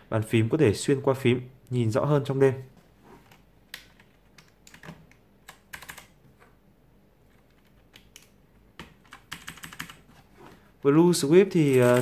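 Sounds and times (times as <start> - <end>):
mechanical keyboard clicking: 3.7 - 6.2, 7.4 - 10.0.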